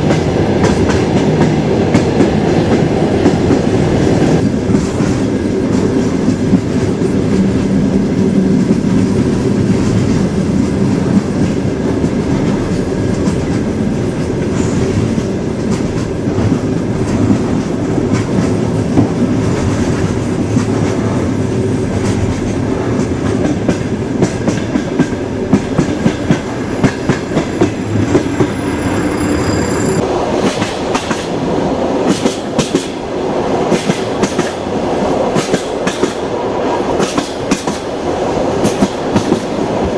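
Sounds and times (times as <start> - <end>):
clickety-clack over rail joints: 0.0 - 28.6, 30.0 - 31.4, 32.0 - 33.0, 33.6 - 39.9
train wheels rumbling on rails: 0.0 - 39.9.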